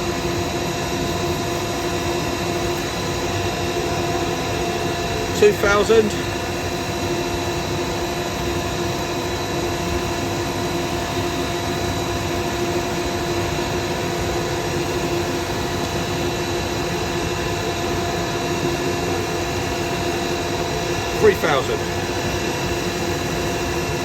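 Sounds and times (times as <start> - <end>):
dust extractor drone: 0.0 - 24.0.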